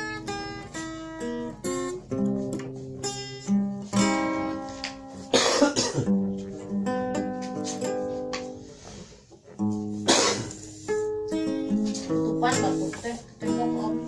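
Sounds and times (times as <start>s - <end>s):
acoustic guitar picked notes: 0.0s - 14.0s
person coughing: 5.3s - 6.2s, 10.0s - 10.6s.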